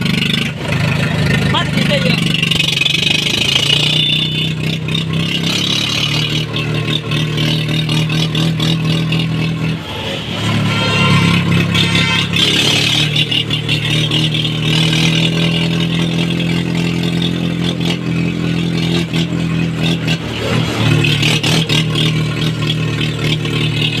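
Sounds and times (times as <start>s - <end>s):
tractor diesel engine running: 0.0s - 24.0s
high turbo whistle: 10.1s - 13.3s.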